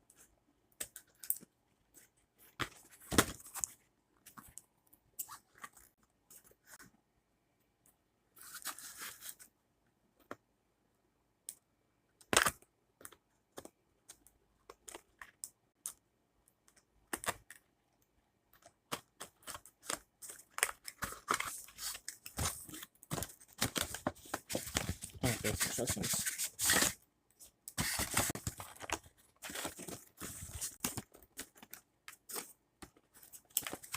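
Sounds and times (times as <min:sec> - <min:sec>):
cardboard and plastic tearing: 0:19.0 - 0:27.0, 0:27.8 - 0:32.5.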